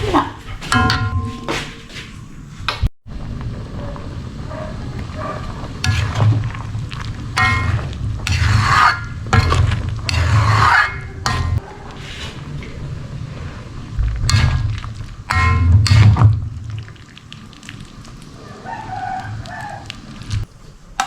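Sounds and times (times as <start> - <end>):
spatula scraping in pan: 4.5 - 16.9.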